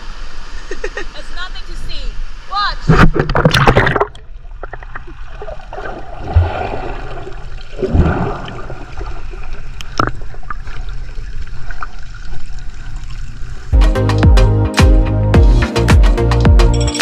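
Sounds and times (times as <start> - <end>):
water sloshing and gurgling: 2.2 - 13.7.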